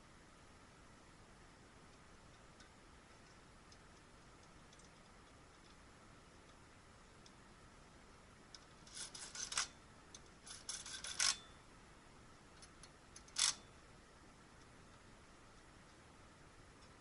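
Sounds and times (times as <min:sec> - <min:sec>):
sharp scrape: 0:08.8 - 0:09.7.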